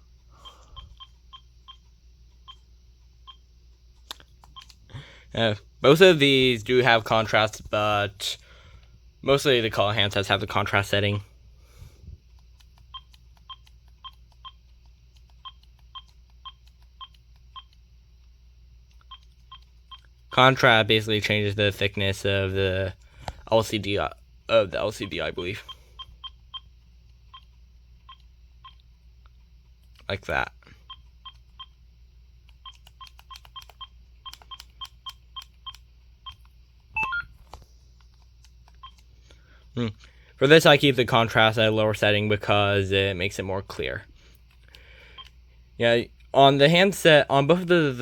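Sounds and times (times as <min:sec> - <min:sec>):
phone keypad two-tone beeps: 0:37.0 - 0:37.2.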